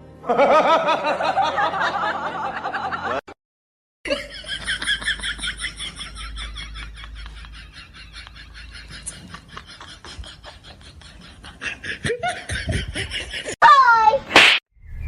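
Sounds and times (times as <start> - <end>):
person laughing: 4.1 - 13.6.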